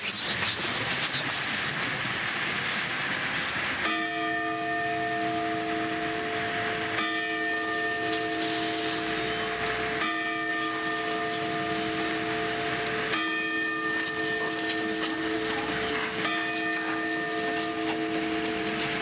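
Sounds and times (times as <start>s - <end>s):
radio hiss: 0.0s - 3.8s, 8.1s - 10.0s
clock tower bell striking: 3.8s - 19.0s.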